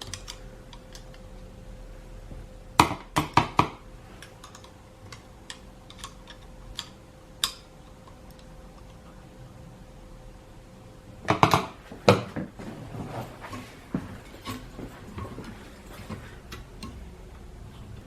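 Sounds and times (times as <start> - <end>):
metal tools clicking and tapping: 0.0 - 1.2, 4.2 - 9.0, 14.2 - 17.4.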